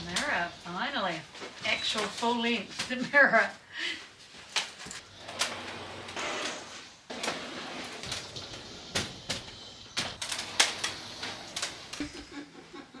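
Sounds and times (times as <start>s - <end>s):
sliding door rolling on track: 5.1s - 12.2s.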